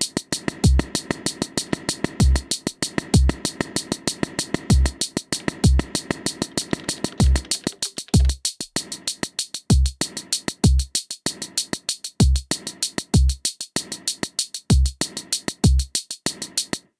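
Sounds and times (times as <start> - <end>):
hi-hat ticks: 0.0 - 16.9
synthesized kick drums: 0.4 - 8.9, 9.7 - 11.0, 12.2 - 13.5, 14.7 - 16.4.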